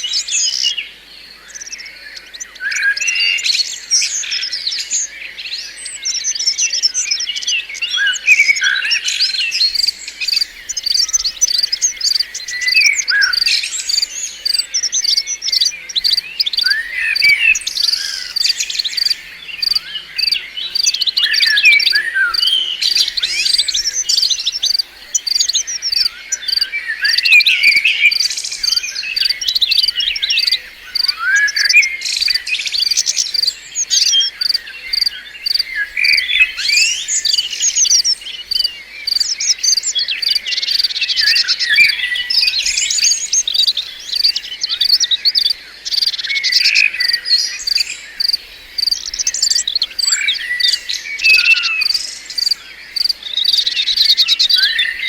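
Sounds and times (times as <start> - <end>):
birds chirping and twittering: 0.0 - 55.0
high pulsing tone: 21.7 - 24.1.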